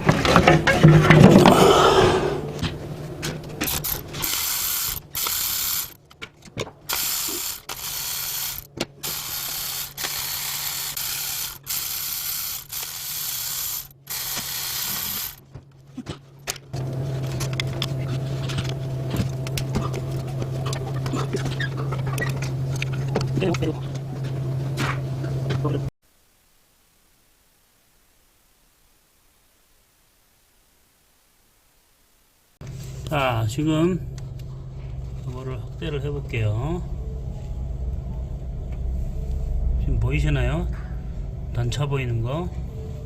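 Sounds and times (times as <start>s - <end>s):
power ratchet wrench bursts: 3.6s - 6.0s, 6.9s - 15.4s
steady low hum: 32.6s - 43.0s.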